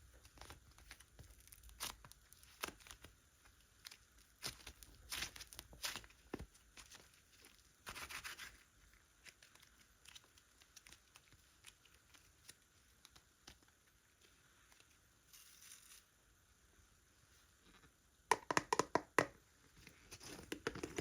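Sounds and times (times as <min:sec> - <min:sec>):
slime crackling and rubbing: 0:00.1 - 0:16.1.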